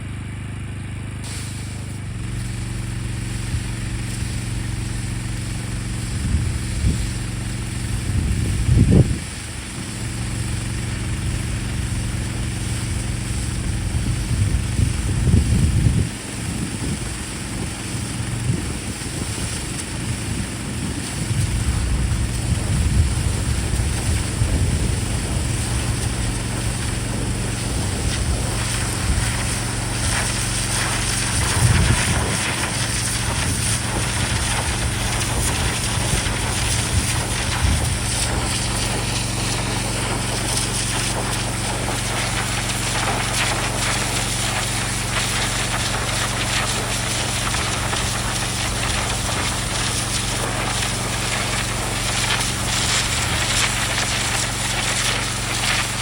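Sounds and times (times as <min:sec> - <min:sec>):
pressure washer engine running: 0:00.0 - 0:56.0
water jet hissing into soil: 0:01.2 - 0:56.0
wind buffeting microphone: 0:07.8 - 0:09.8, 0:13.6 - 0:56.0.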